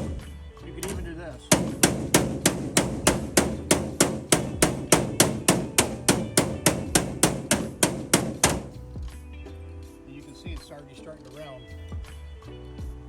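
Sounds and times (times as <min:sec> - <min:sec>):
hammer tapping metal plate: 0:00.0 - 0:00.2, 0:00.8 - 0:08.9.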